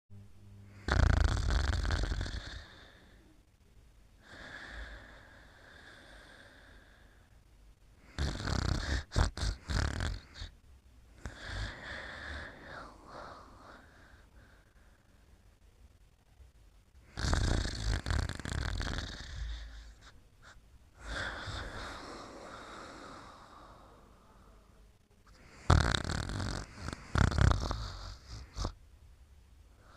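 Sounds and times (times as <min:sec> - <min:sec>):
person snoring: 0:00.6 - 0:03.2, 0:08.0 - 0:10.5, 0:11.2 - 0:14.5, 0:17.0 - 0:24.0, 0:25.3 - 0:28.8.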